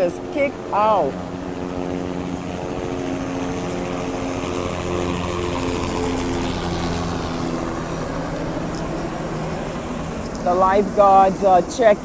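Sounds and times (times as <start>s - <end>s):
boat engine drone: 0.0s - 12.0s
constant rushing background: 0.0s - 12.0s.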